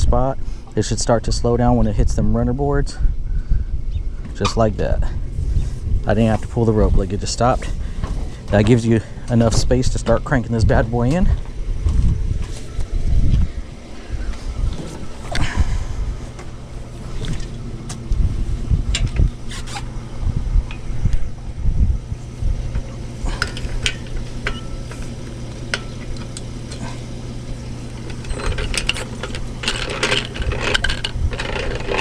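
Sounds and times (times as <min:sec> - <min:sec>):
engine idling hum: 0:00.0 - 0:32.0
metallic clicks and clanks: 0:22.7 - 0:27.1, 0:28.0 - 0:32.0.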